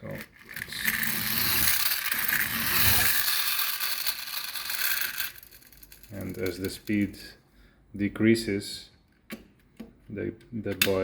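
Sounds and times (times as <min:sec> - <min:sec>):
toy friction motor whirring: 0:00.4 - 0:06.6.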